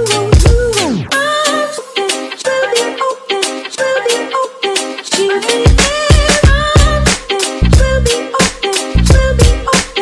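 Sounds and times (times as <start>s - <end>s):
heavy bass and drum beat: 0.0s - 1.3s, 5.6s - 10.0s
beat-driven music with melody: 0.0s - 10.0s.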